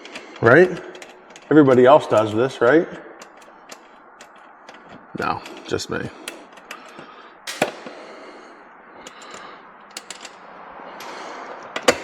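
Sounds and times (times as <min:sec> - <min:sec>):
clicks and knocks of hand tools: 0:06.2 - 0:08.0, 0:09.0 - 0:10.4, 0:11.0 - 0:12.0.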